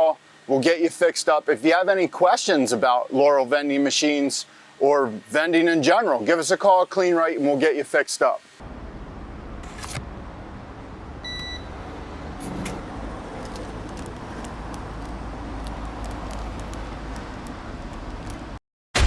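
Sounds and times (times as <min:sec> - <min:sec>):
traffic rumble: 0:08.6 - 0:18.6
short electronic beep: 0:11.2 - 0:11.7.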